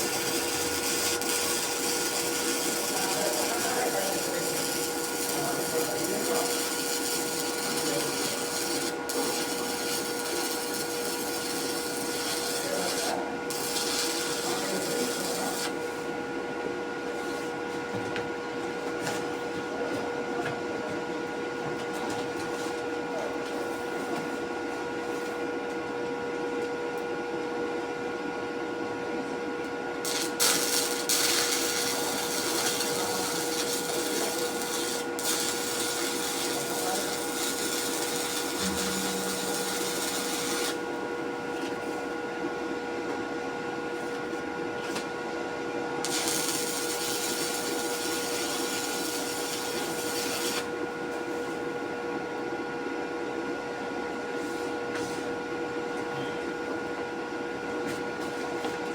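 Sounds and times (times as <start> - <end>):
machine hum with fixed tones: 0.0 - 16.8, 29.5 - 51.1.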